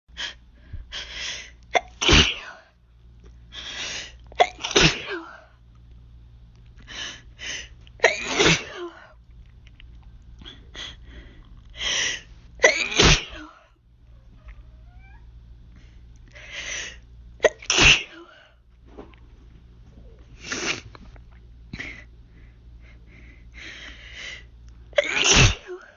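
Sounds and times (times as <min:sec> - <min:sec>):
person sneezing loudly: 0:01.8 - 0:02.6, 0:04.4 - 0:05.3, 0:08.0 - 0:09.0, 0:12.6 - 0:13.6, 0:17.4 - 0:18.2, 0:25.0 - 0:25.9.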